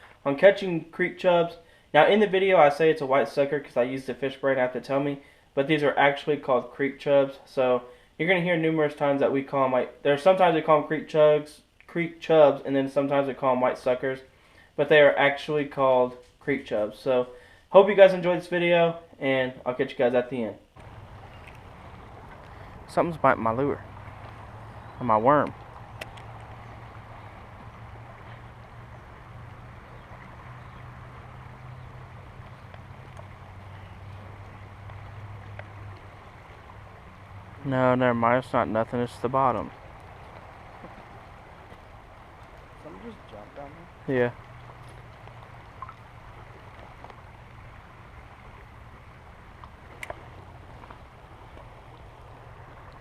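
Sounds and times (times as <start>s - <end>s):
creek water flowing: 0.0s - 53.0s
low steady hum: 20.7s - 53.0s
faint clicks: 20.8s - 22.8s, 25.4s - 28.5s, 32.4s - 34.1s, 34.8s - 37.2s, 44.4s - 47.2s, 49.6s - 53.0s.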